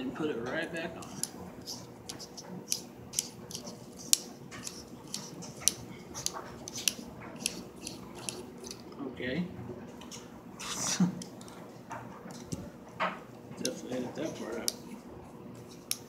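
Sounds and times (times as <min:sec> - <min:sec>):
metal pen parts clicking and scraping: 0:01.0 - 0:08.9.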